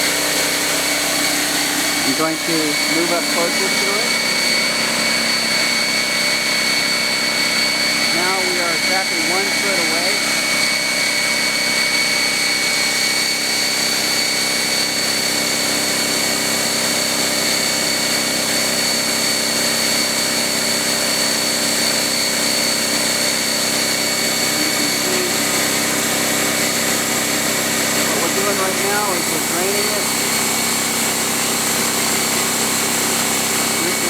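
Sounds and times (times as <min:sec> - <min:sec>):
high whine: 0:00.0 - 0:11.1, 0:23.9 - 0:30.6, 0:33.6 - 0:34.0
air compressor running: 0:00.0 - 0:34.0.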